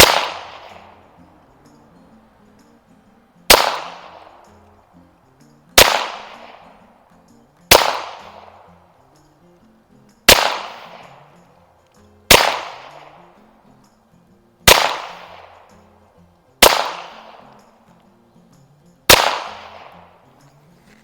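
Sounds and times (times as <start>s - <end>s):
pistol shots with echo: 0.0s - 1.0s, 3.5s - 4.5s, 5.8s - 6.8s, 7.7s - 8.7s, 10.3s - 11.3s, 12.3s - 13.3s, 14.6s - 15.8s, 16.6s - 17.7s, 19.1s - 20.1s.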